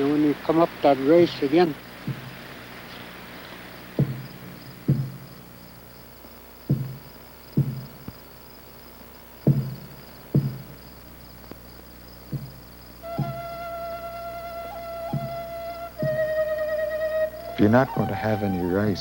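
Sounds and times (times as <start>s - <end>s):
dull hollow knocks: 1.6s - 8.4s, 9.2s - 13.9s, 14.7s - 16.6s.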